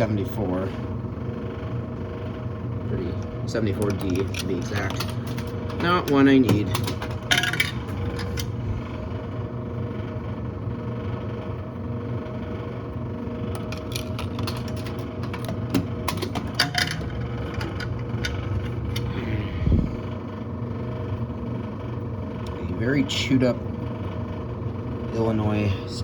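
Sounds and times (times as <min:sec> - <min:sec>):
steady hum: 0:00.0 - 0:26.0
coins clinking in a vending machine: 0:03.5 - 0:08.6, 0:13.5 - 0:19.1.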